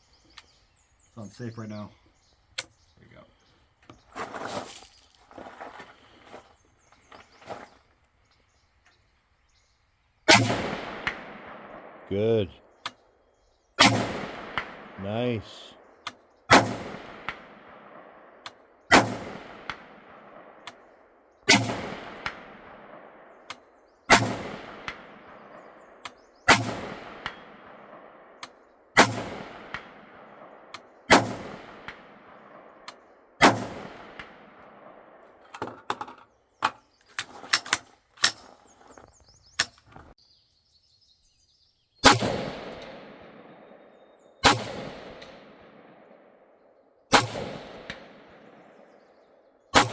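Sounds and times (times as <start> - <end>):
faint sharp gunshot cracks: 10.3 - 12.1, 13.8 - 15.0, 16.5 - 20.8, 21.5 - 25.3, 26.1 - 35.2, 42.0 - 46.2, 47.1 - 48.7
loud echoing rifle shots: 10.3 - 12.8, 13.8 - 35.4, 42.0 - 49.9.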